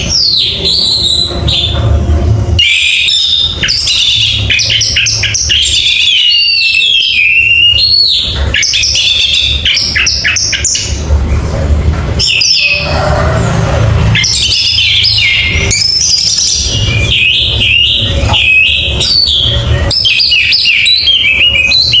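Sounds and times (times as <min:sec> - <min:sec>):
steady low hum: 0:00.0 - 0:06.0, 0:07.4 - 0:20.0
thrush singing whistled phrases: 0:02.6 - 0:10.9, 0:14.1 - 0:22.0.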